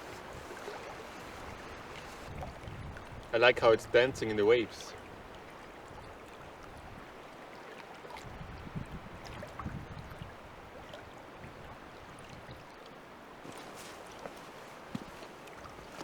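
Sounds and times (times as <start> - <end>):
water sloshing: 0.0 - 3.3, 9.2 - 16.0
lake waves lapping: 0.0 - 16.0.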